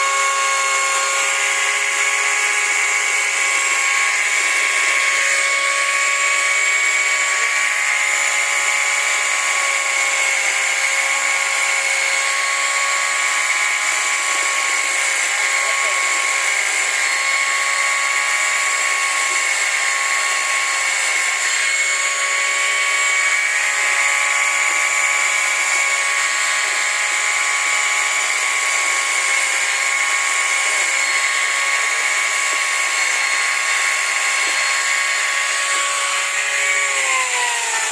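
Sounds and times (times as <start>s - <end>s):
power tool motor running: 0.0s - 37.9s.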